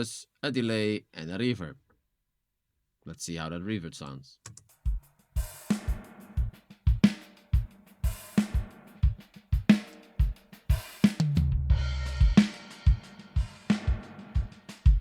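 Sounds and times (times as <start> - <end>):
drum beat with reverb: 4.5 - 15.0
kick drum thumps: 5.7 - 7.7.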